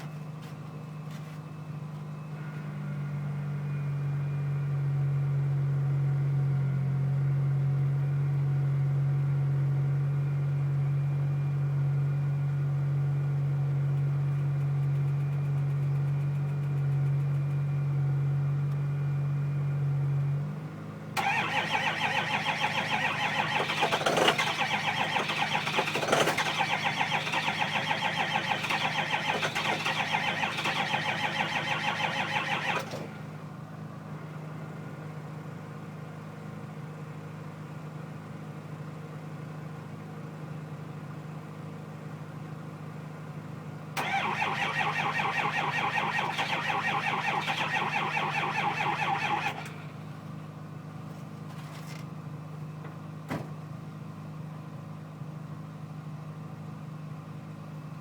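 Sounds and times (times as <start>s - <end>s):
diesel engine cranking: 21.2s - 33.4s, 44.0s - 50.3s.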